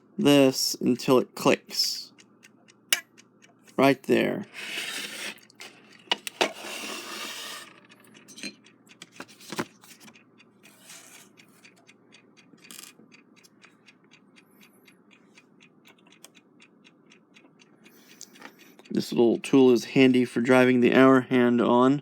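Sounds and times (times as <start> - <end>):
clock ticking: 0.5 - 4.5, 5.4 - 22.0
metal tools clicking and scraping: 4.8 - 9.3.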